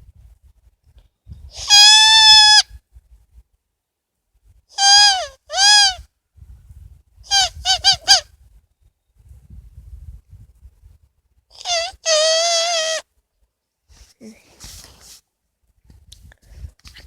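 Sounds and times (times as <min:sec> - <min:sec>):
turkey call yelps: 0:01.6 - 0:02.7, 0:04.8 - 0:06.0, 0:07.3 - 0:08.2, 0:11.6 - 0:13.0.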